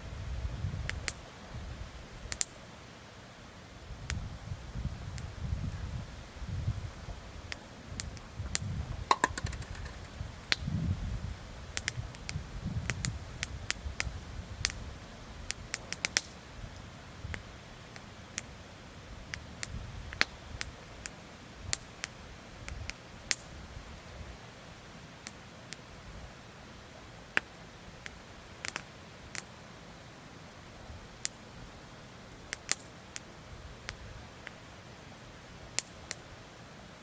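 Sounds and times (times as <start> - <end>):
campfire crackling and popping: 0.8 - 1.2, 2.2 - 2.7, 4.1 - 4.3, 7.4 - 10.8, 11.7 - 16.6, 17.2 - 18.6, 19.2 - 23.6, 25.2 - 25.9, 27.3 - 29.5, 31.1 - 31.5, 32.3 - 34.6, 35.7 - 36.3.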